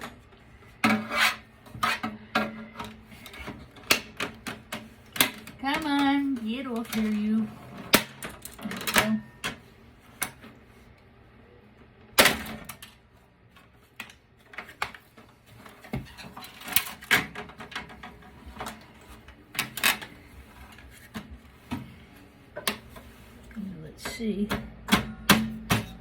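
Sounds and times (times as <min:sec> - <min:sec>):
computer case clicks and clatter: 0:12.1 - 0:21.9.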